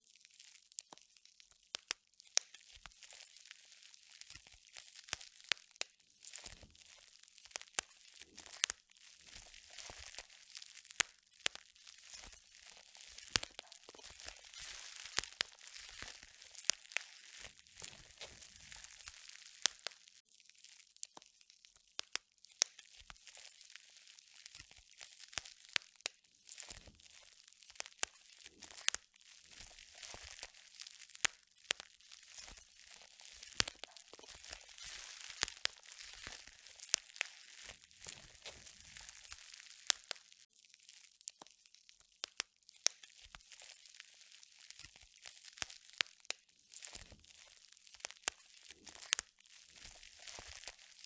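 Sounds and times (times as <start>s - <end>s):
material crinkling and crackling: 0.0s - 51.0s.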